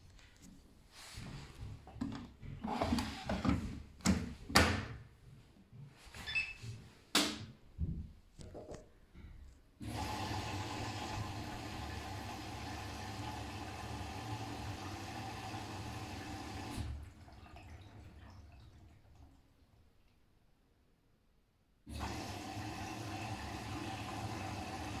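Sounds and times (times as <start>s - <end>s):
water rushing into washing machine: 1.6s - 4.8s, 9.8s - 19.8s, 21.9s - 25.0s
faint water trickle: 16.9s - 20.4s.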